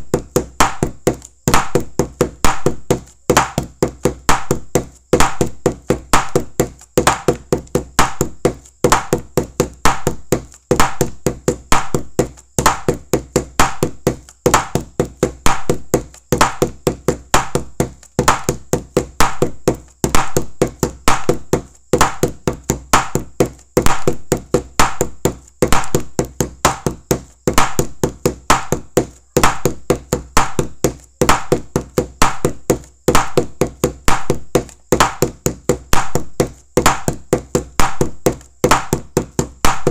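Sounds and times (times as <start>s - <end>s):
rhythmic percussion knocks and taps: 0.0s - 39.9s.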